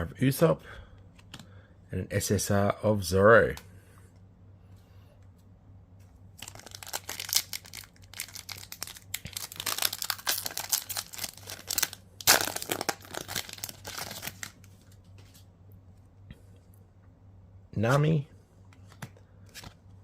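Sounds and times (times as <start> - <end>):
wrapper tearing and crinkling: 6.4 - 14.6.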